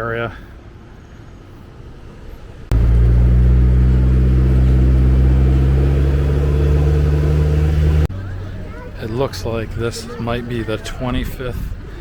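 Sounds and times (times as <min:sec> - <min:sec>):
vehicle engine humming: 0:01.9 - 0:10.8.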